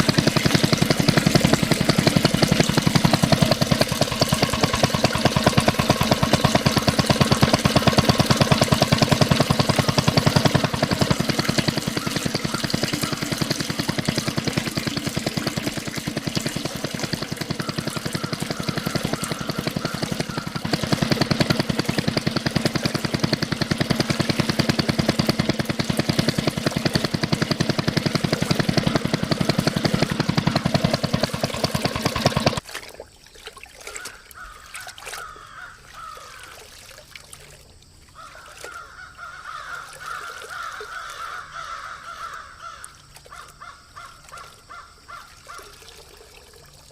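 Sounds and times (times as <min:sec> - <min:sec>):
miniature diesel engine chugging: 0:00.0 - 0:32.6.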